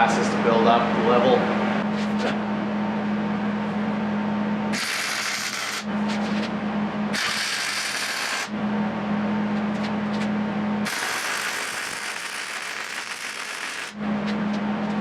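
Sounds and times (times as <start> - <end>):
welder electrical hum: 0.0 - 15.0
welding arc crackling: 4.8 - 5.9, 7.2 - 8.5, 10.8 - 14.0.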